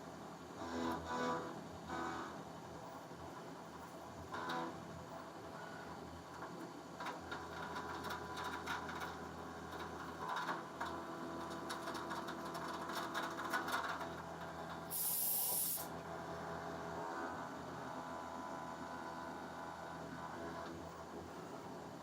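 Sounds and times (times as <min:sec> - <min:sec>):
burst of spraying hiss: 0:14.9 - 0:15.9.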